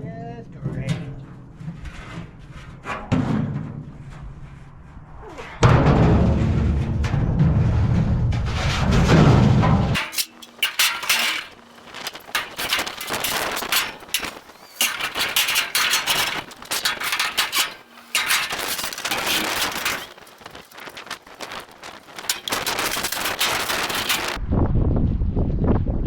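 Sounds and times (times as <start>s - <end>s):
low rumble: 4.2s - 10.0s
scrap metal clanking and banging: 5.7s - 24.4s.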